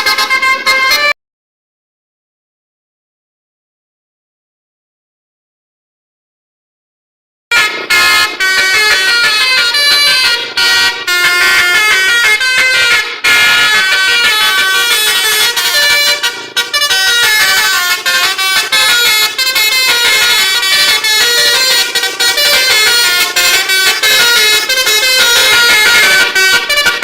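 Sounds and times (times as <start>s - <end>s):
musical air horns melody: 0.0s - 1.2s, 7.5s - 27.0s.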